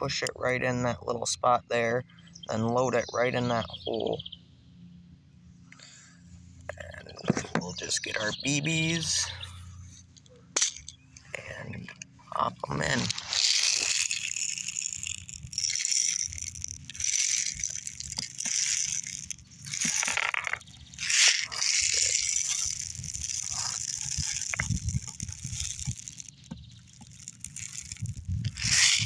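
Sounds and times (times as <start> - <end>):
steel bbs rattling in container: 10.6 - 29.0
handling noise: 12.7 - 29.0.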